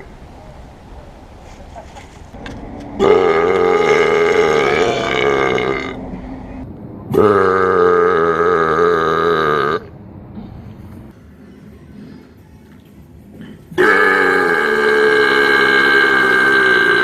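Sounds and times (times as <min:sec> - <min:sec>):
long loud belches: 0:03.0 - 0:06.0, 0:07.1 - 0:09.9, 0:13.8 - 0:17.0.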